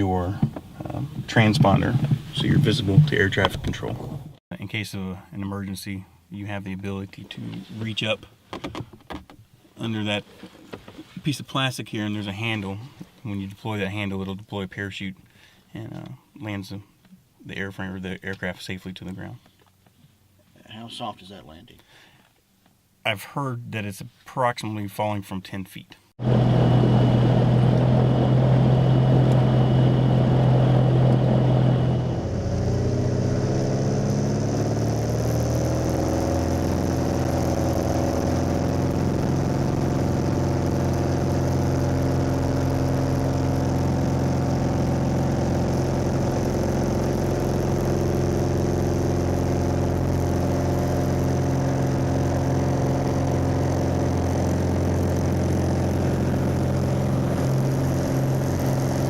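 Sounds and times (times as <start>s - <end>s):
propeller plane engine running: 26.2s - 59.0s.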